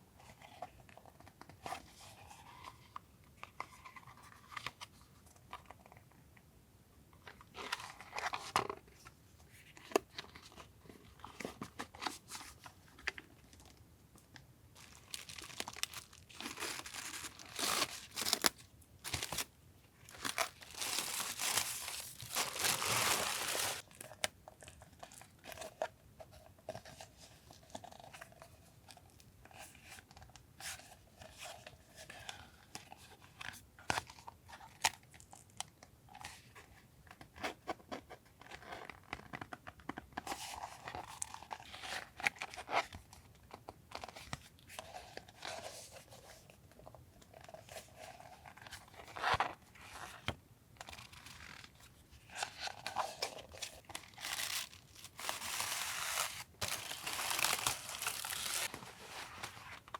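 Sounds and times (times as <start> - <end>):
packaging crinkling and tearing: 14.8 - 24.3, 50.8 - 59.9.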